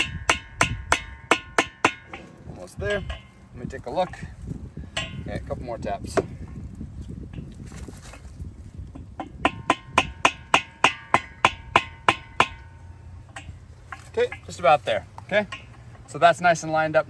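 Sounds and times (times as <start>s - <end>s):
hammer tapping metal bracket: 9.2s - 12.7s.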